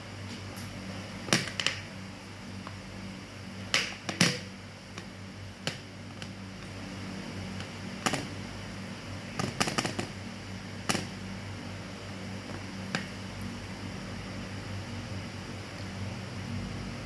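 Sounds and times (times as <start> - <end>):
hard objects clicking and knocking: 9.4 - 10.1.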